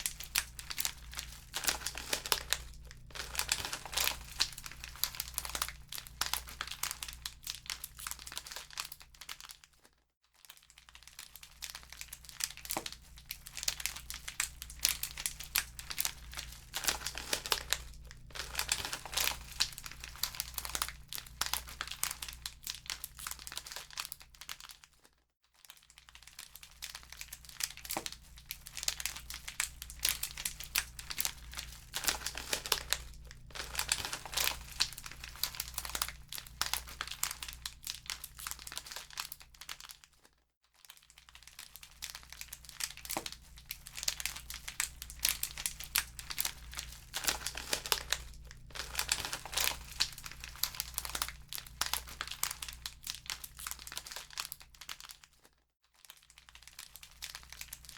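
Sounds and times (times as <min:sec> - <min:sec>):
wood fire crackling: 0:00.0 - 0:06.8, 0:14.2 - 0:22.0, 0:29.4 - 0:37.8, 0:44.0 - 0:52.7.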